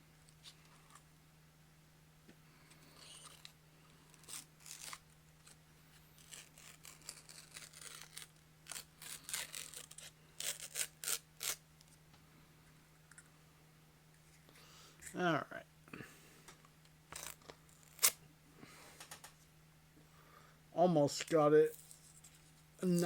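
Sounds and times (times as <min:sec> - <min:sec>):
wrapper crinkling and tearing: 0:03.0 - 0:05.6, 0:06.2 - 0:11.6.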